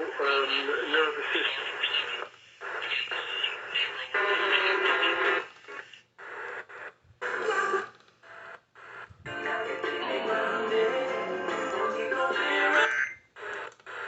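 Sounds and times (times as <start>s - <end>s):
radio voice: 0.0s - 5.5s
radio music: 0.0s - 14.0s.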